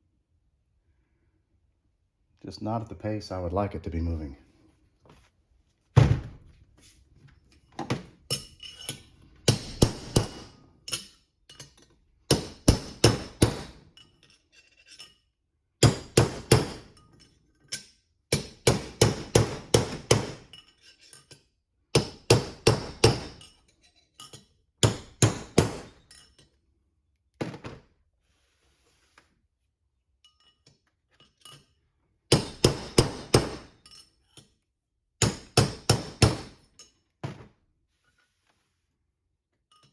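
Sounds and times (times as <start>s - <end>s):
hammer striking steel: 9.5s - 10.5s, 32.3s - 33.8s.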